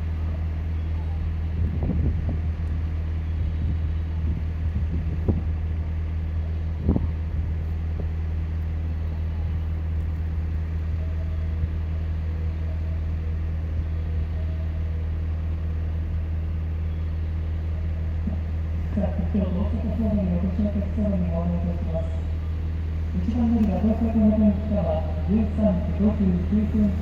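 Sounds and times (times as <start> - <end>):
electric train humming: 0.0 - 27.0.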